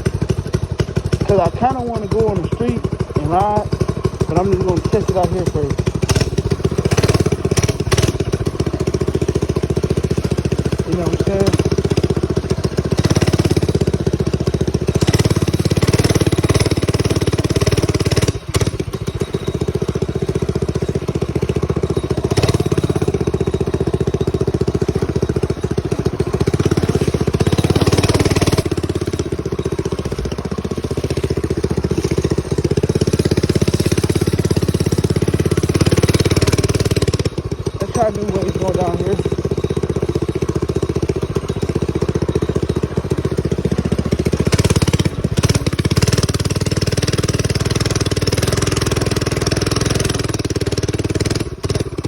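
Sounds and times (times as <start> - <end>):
small bike engine revving: 0.0 - 52.0.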